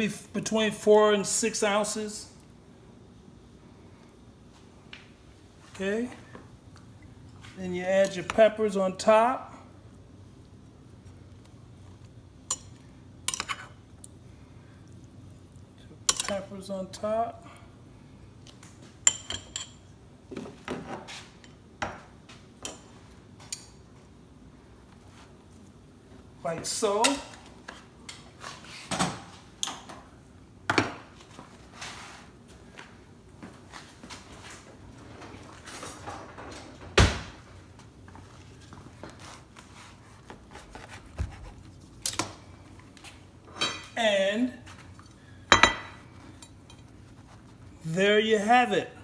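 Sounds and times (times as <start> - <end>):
utensil clinking on a dish: 45.5 - 46.8.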